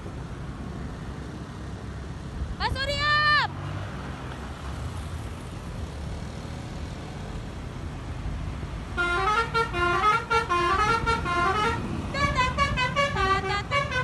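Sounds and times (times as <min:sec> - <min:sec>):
vehicle engine rumble: 0:00.0 - 0:14.0
multi-tone bus air horn tune: 0:09.0 - 0:14.0.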